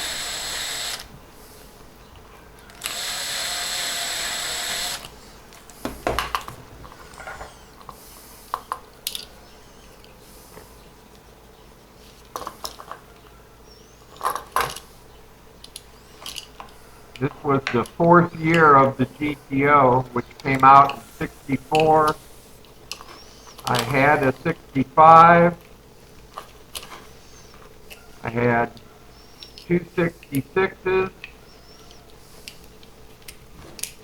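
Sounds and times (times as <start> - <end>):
electric drill whining: 0.0 - 1.1, 2.7 - 7.8.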